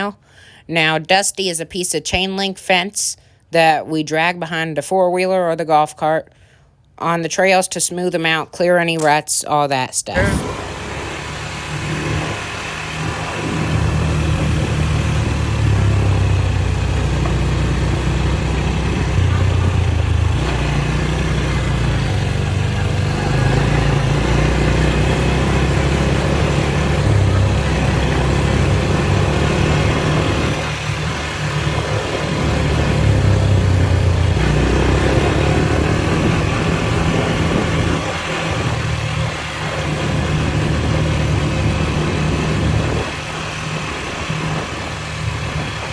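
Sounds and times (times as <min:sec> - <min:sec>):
atv engine running: 0:10.2 - 0:45.9.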